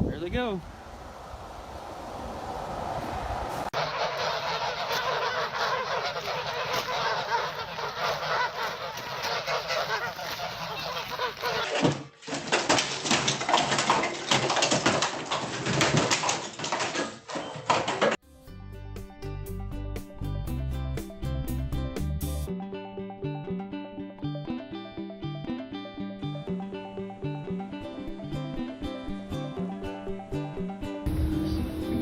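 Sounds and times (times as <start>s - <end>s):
many birds chattering: 3.8s - 11.7s.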